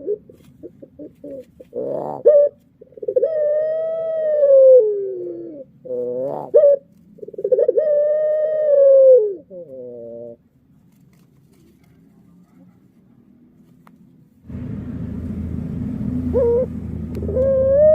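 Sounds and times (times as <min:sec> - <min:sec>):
dove cooing: 0:00.0 - 0:10.4, 0:16.1 - 0:17.9.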